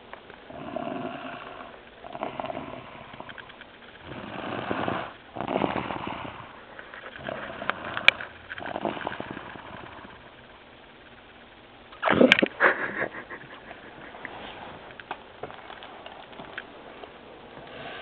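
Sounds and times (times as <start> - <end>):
rasping snoring: 0.4 - 3.4, 4.0 - 10.4, 17.5 - 18.0.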